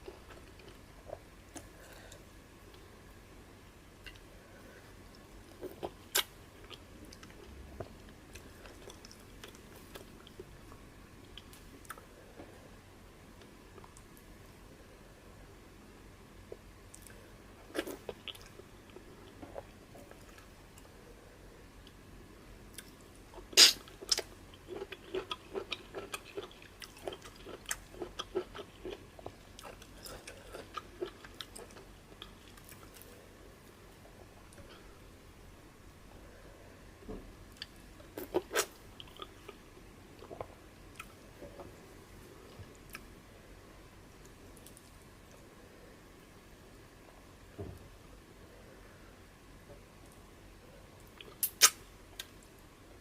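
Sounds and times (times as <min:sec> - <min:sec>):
man chewing food: 0:05.1 - 0:12.1, 0:22.7 - 0:33.2, 0:37.5 - 0:43.1
crunchy bite: 0:23.4 - 0:29.0, 0:51.3 - 0:51.8
wet mouth clicks: 0:51.2 - 0:52.3.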